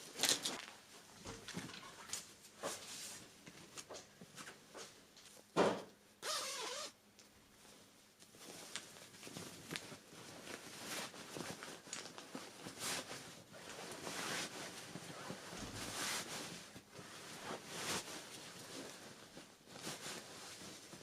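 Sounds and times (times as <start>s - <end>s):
irregular rustling: 7.6s - 21.0s.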